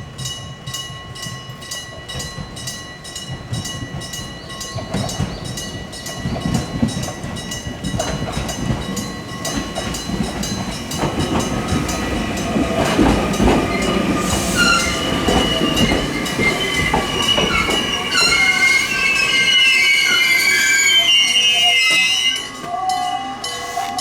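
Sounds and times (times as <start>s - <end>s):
train rumbling over rail joints: 0.0s - 24.0s
train wheels squealing: 4.1s - 24.0s
level crossing bell ringing: 21.0s - 24.0s.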